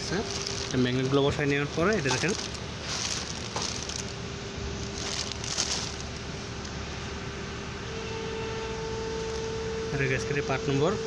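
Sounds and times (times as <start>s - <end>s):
soft rustles of parts handled: 0.0s - 6.8s
faint steady hum: 0.0s - 11.0s.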